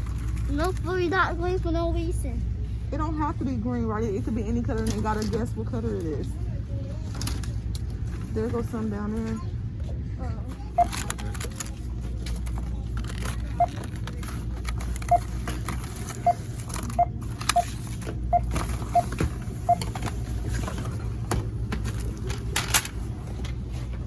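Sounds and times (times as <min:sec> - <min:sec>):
steady low hum: 0:00.0 - 0:24.0
barcode scanner beeping: 0:10.8 - 0:11.1, 0:13.5 - 0:13.8, 0:15.0 - 0:15.5, 0:16.1 - 0:20.0.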